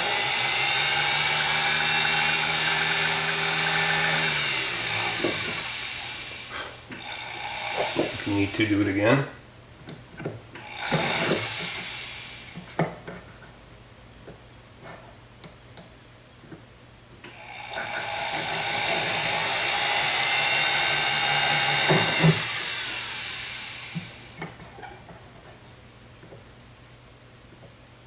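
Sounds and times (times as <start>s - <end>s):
small drill boring into metal: 0.0s - 9.1s, 10.6s - 12.8s, 17.3s - 24.6s.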